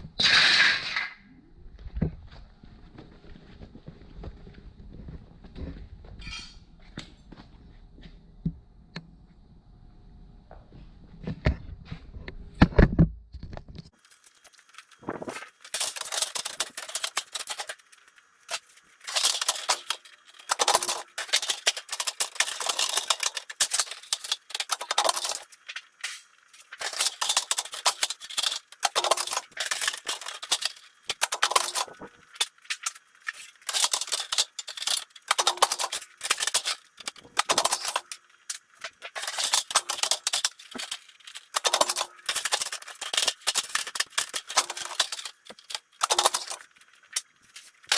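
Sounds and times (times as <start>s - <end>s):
sheet metal clicking and rattling: 14.1s - 47.9s.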